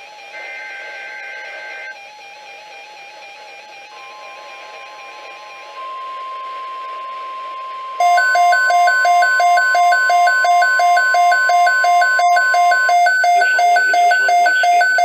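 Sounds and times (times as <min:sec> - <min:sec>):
alternating alarm beeping: 0:00.0 - 0:15.0
steady warning tone: 0:03.3 - 0:15.0
person speaking: 0:12.7 - 0:15.0.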